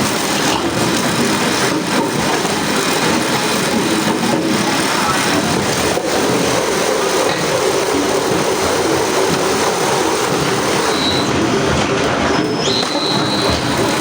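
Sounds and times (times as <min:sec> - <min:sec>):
heavy machinery running: 0:00.0 - 0:14.0
high metallic squeal: 0:10.7 - 0:11.4, 0:12.2 - 0:14.0.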